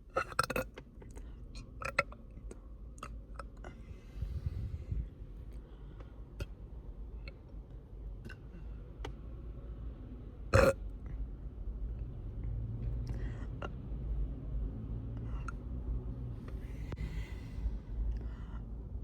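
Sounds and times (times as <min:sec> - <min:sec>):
girl burping: 0:10.6 - 0:10.8.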